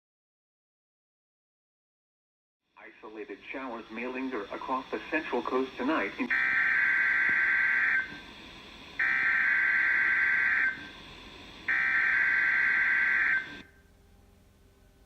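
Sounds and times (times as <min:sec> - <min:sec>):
faint radio hiss: 0:02.6 - 0:15.0
high-pitched buzzing data tones: 0:11.7 - 0:13.9.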